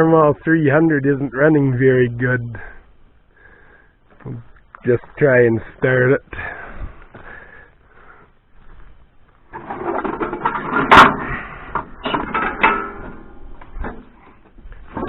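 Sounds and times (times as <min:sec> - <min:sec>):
mechanical clattering and knocking: 0:09.6 - 0:14.2.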